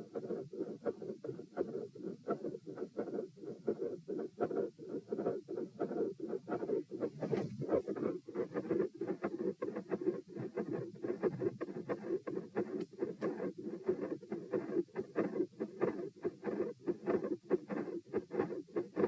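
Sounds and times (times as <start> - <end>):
heartbeat thuds: 5.8 - 8.8.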